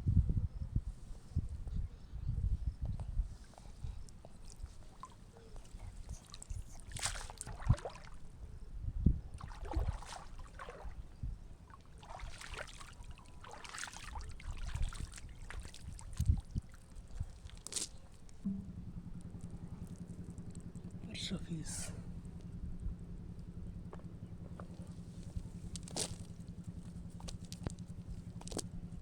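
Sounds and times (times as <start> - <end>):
water splashing and sloshing: 4.1 - 8.4, 9.3 - 18.2
low thumps: 18.4 - 20.0.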